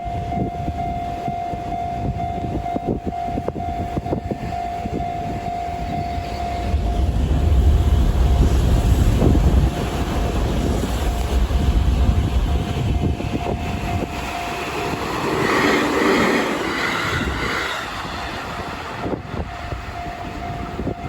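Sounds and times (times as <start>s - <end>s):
level crossing alarm tone: 0.0s - 7.2s, 12.8s - 16.1s, 19.0s - 21.0s
train rumble: 0.0s - 21.0s
train wheels clicking over rails: 6.2s - 19.6s.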